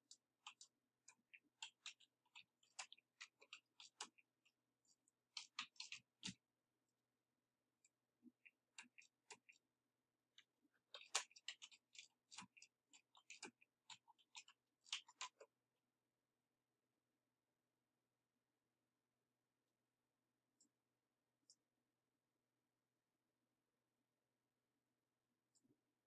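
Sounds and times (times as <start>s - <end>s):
faint irregular clicking: 0.0s - 7.0s, 10.3s - 15.5s.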